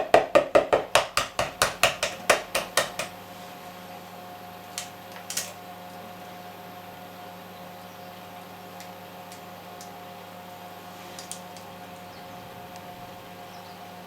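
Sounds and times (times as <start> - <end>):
utensil knocking against mixing bowl: 0.0 - 3.1
faint steady hum: 0.0 - 14.0.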